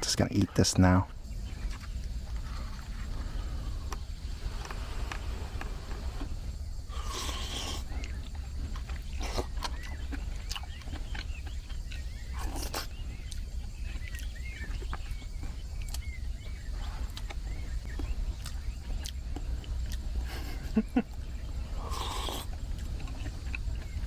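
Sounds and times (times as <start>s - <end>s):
steady low rumble: 0.0s - 24.0s
small animal chirping: 7.1s - 20.2s.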